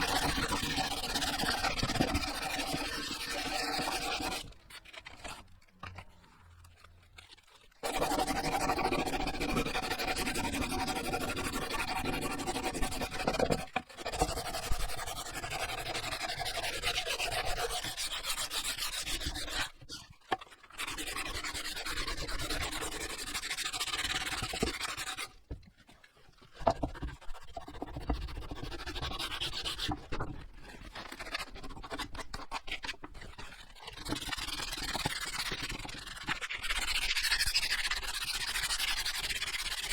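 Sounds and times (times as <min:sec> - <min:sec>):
sandpaper rubbing on wood: 0:00.0 - 0:05.0, 0:07.4 - 0:19.8.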